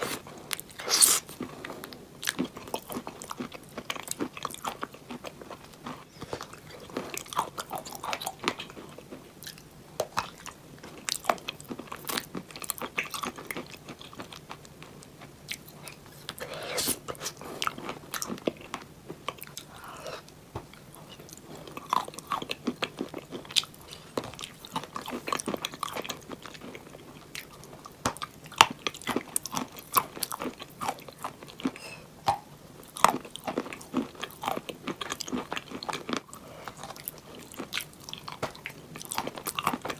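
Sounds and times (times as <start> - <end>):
chalk crunching while chewing: 0.0 - 20.3.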